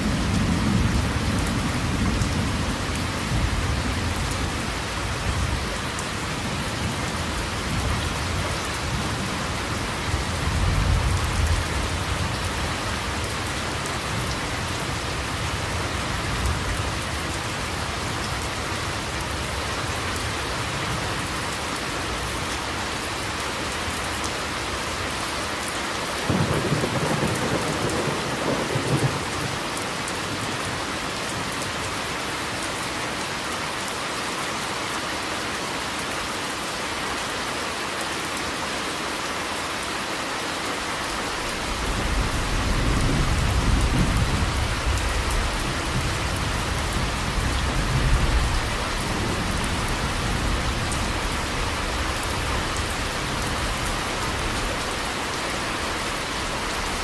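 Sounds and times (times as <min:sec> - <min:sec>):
steady rain hissing: 0:00.0 - 0:57.0
thunder rumbling: 0:26.3 - 0:29.7.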